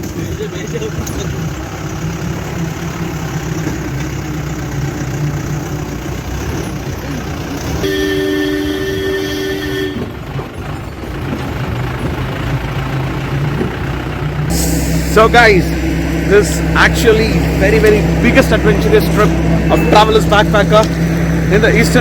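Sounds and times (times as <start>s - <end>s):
car engine running: 0.0s - 22.0s
road noise on bumpy track: 0.0s - 22.0s
two-tone car horn: 7.8s - 10.2s.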